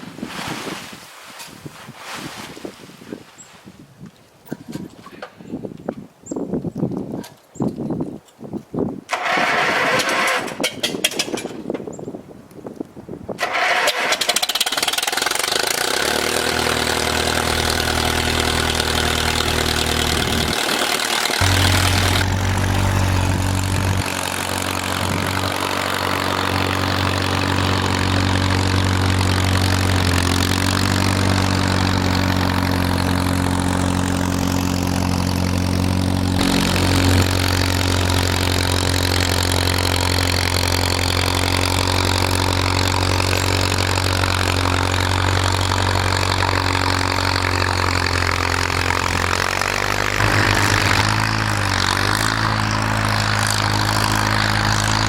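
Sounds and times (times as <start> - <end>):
tractor engine running: 9.1 - 11.6, 13.4 - 55.0.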